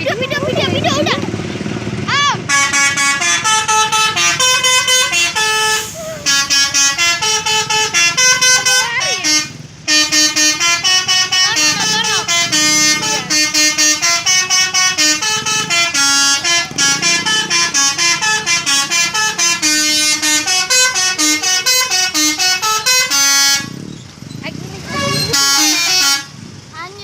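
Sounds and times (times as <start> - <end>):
air horn playing a tune: 2.5 - 23.8, 24.9 - 26.4.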